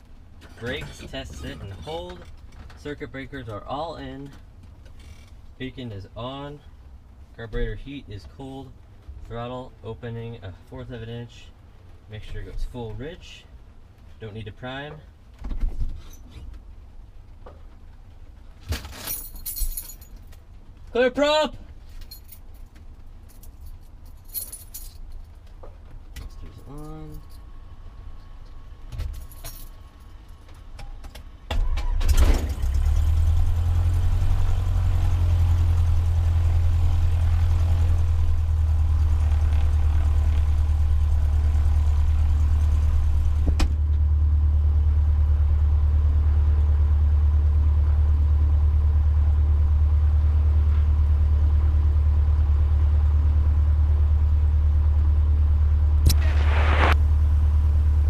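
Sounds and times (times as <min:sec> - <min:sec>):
aircraft engine starting and idling: 0:31.5 - 0:55.2, 0:55.8 - 0:58.0
sharp click: 0:56.0 - 0:57.0.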